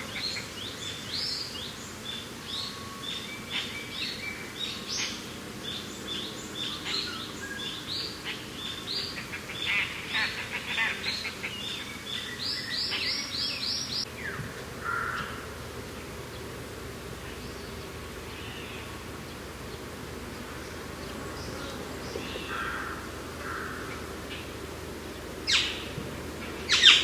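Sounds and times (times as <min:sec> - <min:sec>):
birds singing: 0:00.0 - 0:15.6, 0:17.2 - 0:27.0
low rush of wind: 0:11.6 - 0:27.0.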